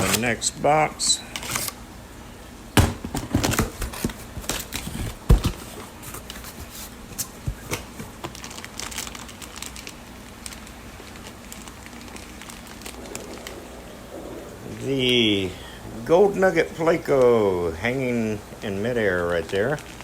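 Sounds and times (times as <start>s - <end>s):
box knocks: 2.8s - 3.8s
plastic bags crinkling: 3.3s - 17.2s, 18.5s - 20.0s.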